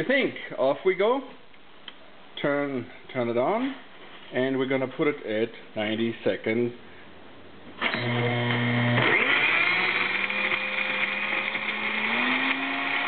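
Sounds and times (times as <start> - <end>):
blender motor blending: 7.8 - 13.0.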